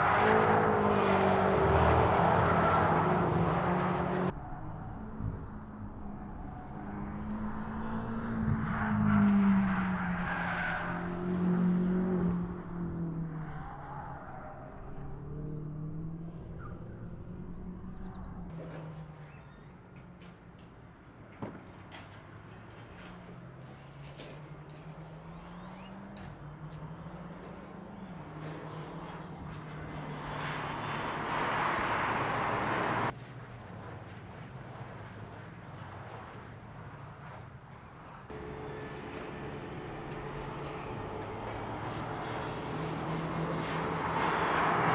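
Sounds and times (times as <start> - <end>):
car engine under load: 17.4 - 44.9
car engine running: 38.3 - 42.4.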